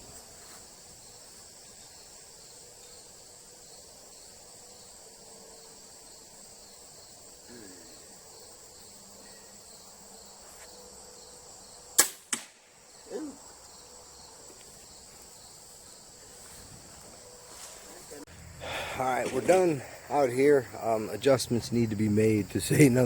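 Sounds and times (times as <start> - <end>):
crickets chirring: 0.0 - 23.0
bow release snap: 12.0 - 12.6
arrow striking target: 12.0 - 12.7.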